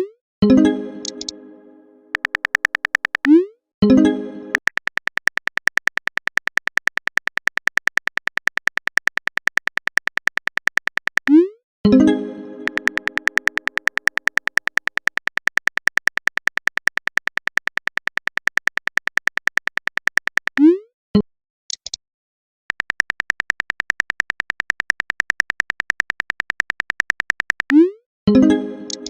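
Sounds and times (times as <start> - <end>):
phone keyboard typing clicks: 1.0 - 1.3, 2.1 - 3.4, 4.5 - 11.4, 12.6 - 20.7, 22.7 - 27.8.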